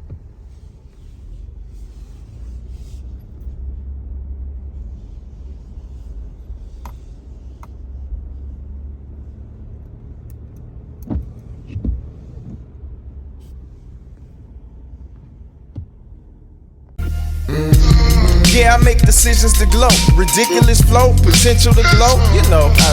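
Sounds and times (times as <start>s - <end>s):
car engine idling: 0.0s - 22.9s
knocks and clunks: 10.9s - 12.7s, 15.6s - 16.1s.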